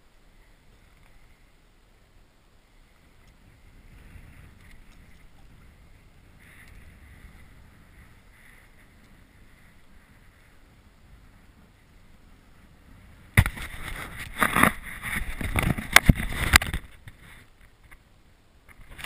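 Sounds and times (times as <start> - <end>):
wind buffeting microphone: 2.8 - 17.4
water splashing around kayak: 12.6 - 17.4.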